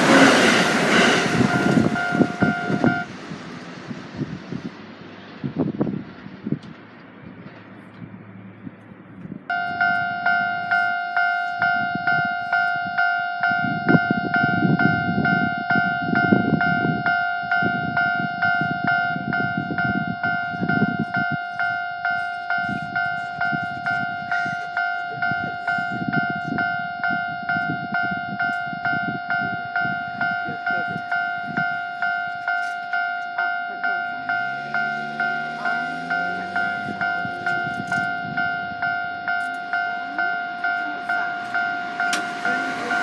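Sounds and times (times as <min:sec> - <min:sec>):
level crossing warning bell: 0:00.0 - 0:03.1, 0:09.5 - 0:43.0
low rumble: 0:00.0 - 0:10.1.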